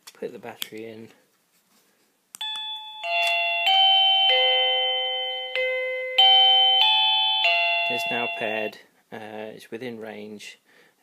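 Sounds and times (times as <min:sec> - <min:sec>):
doorbell click: 0:02.4 - 0:08.7
electronic doorbell chime: 0:02.4 - 0:08.7.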